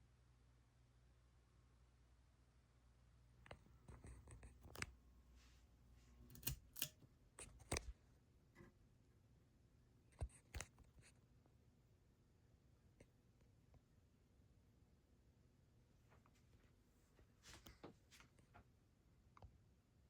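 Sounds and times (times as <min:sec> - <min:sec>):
faint clicks and light knocks: 0:03.4 - 0:05.0.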